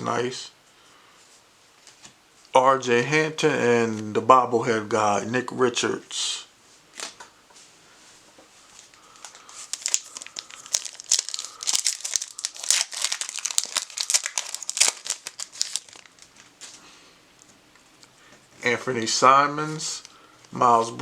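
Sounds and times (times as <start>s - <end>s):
plastic wrapper tearing and crinkling: 8.9s - 16.8s.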